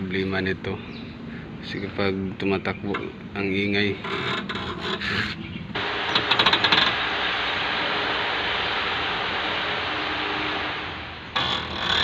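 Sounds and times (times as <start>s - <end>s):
wheel grinding and rattling: 3.9s - 7.6s, 11.3s - 12.0s.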